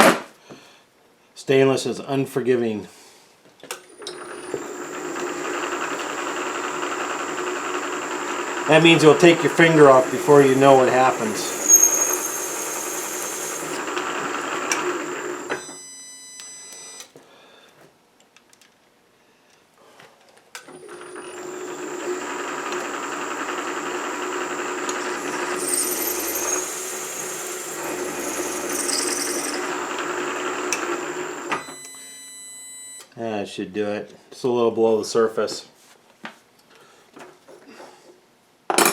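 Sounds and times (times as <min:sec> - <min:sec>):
milling machine spindle humming: 0:04.0 - 0:15.6, 0:20.8 - 0:31.7.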